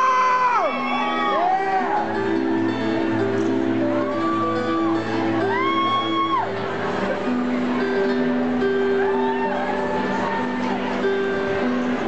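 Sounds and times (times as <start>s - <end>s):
plucked guitar notes: 0.0s - 12.0s.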